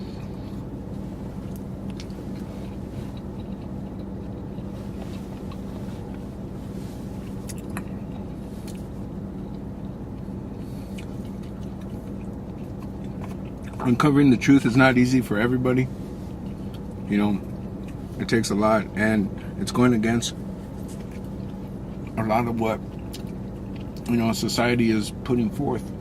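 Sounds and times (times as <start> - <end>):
person chewing food: 0.0 - 13.8, 16.0 - 18.2, 20.3 - 22.2, 22.8 - 24.1
steady low hum: 0.0 - 26.0.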